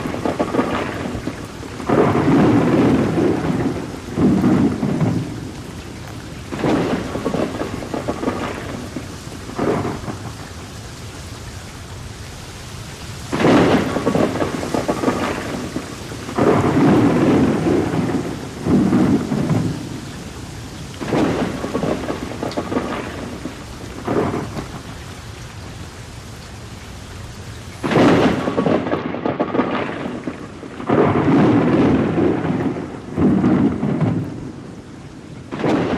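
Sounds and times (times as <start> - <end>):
thunder rumbling: 0.0 - 10.7, 13.3 - 25.5, 27.7 - 35.9
steady rain: 0.0 - 35.9.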